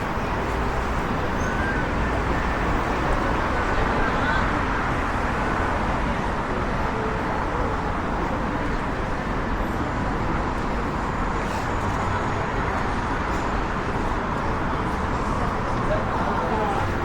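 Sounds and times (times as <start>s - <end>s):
road traffic noise: 0.0s - 17.0s.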